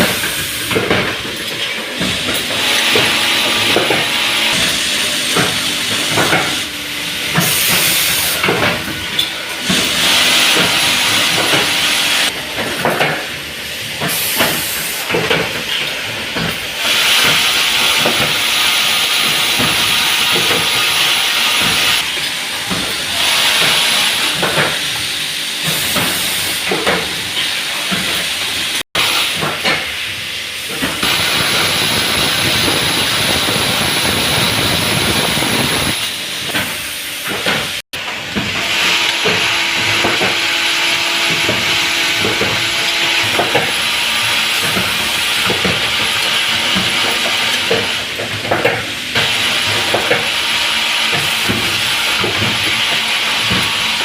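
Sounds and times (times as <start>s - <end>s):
machine hiss: 2.0s - 12.3s, 16.8s - 37.7s.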